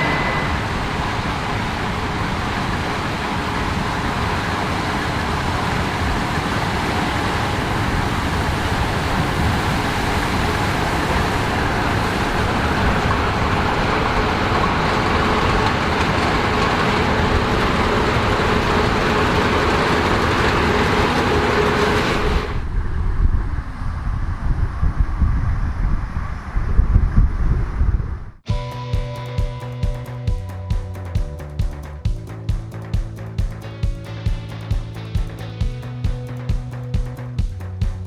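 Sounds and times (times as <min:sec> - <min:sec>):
combine harvester running: 0:00.0 - 0:22.6.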